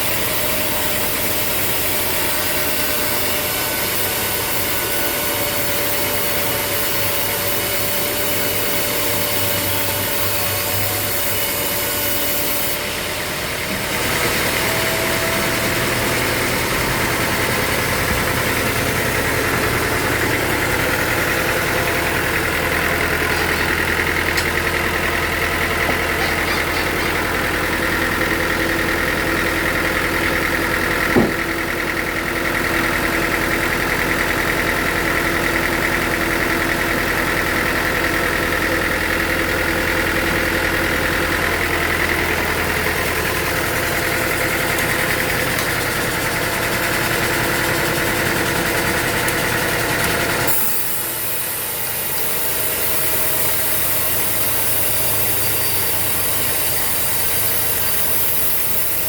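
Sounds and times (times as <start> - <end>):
hissy machine noise: 0.0 - 31.9, 39.2 - 59.0
engine running steadily: 0.0 - 59.0
sharp knock: 31.1 - 31.5.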